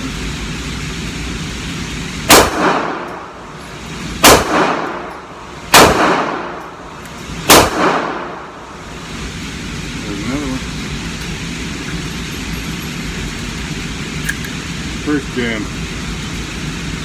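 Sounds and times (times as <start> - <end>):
pistol shots with echo: 2.2 - 3.3, 4.2 - 5.1, 5.7 - 6.8, 7.4 - 8.5.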